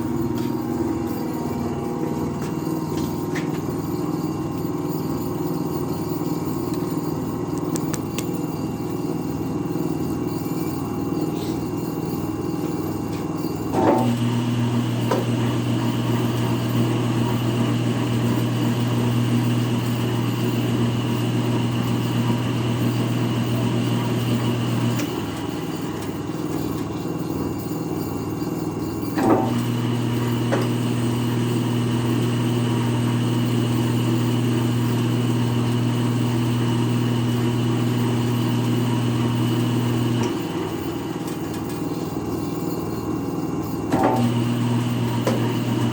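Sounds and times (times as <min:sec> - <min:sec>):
electric motor running: 0:13.8 - 0:26.5, 0:29.2 - 0:41.4, 0:44.0 - 0:45.9.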